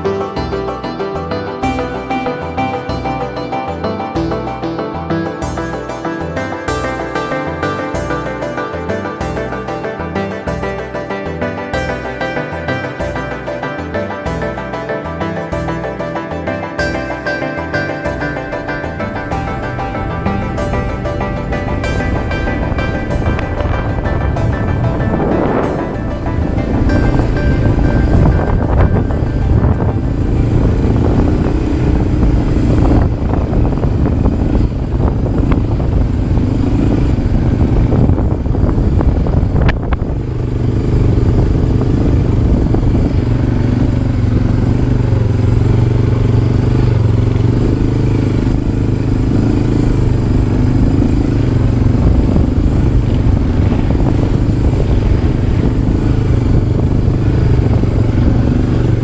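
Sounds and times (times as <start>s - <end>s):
quad bike engine running: 17.0s - 59.0s.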